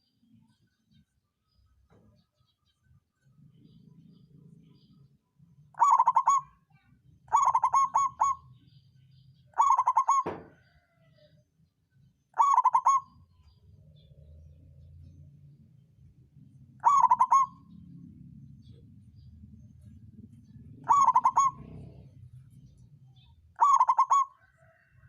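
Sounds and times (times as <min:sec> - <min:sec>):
dove cooing: 0:05.7 - 0:06.6, 0:07.3 - 0:08.6, 0:09.5 - 0:11.0, 0:12.4 - 0:13.6, 0:16.7 - 0:22.7, 0:23.6 - 0:25.0.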